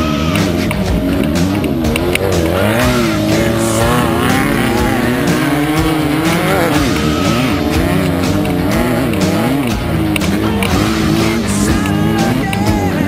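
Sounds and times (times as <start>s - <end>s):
buggy engine revving: 0.0s - 13.0s
music playing: 0.0s - 13.0s.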